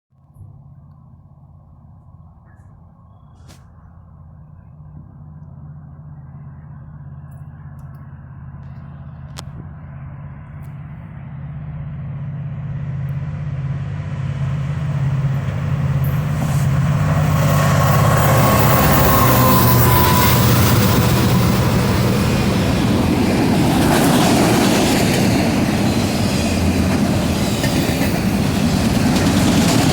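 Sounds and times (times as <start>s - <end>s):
diesel locomotive engine drone: 0.2s - 29.9s
train wheels on rails: 13.2s - 29.9s.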